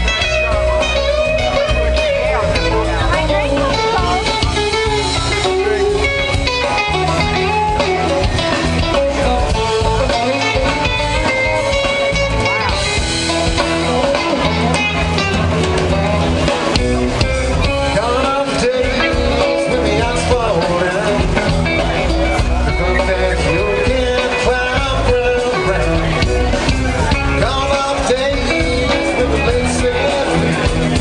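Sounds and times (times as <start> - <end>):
bass: 0.0 - 31.0
electric guitar lines: 0.0 - 31.0.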